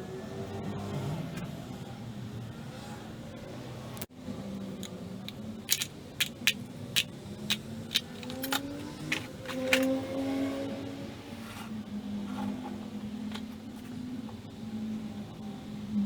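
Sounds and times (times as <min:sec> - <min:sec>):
sharp clicks and knocks: 0:05.3 - 0:09.9.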